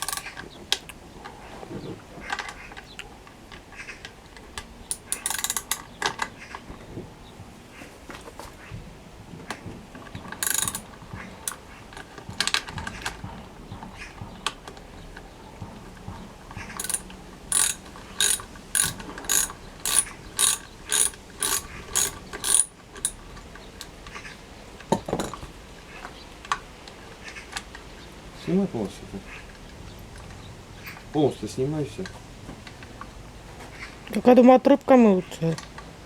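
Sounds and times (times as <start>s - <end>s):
ratchet wrench clicking: 0.0s - 0.4s, 4.9s - 5.8s, 10.4s - 10.9s, 16.8s - 23.2s.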